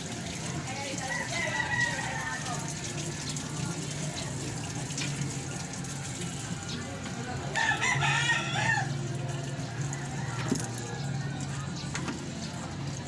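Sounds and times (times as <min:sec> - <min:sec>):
rooster crowing: 0:01.0 - 0:02.4, 0:07.5 - 0:09.0.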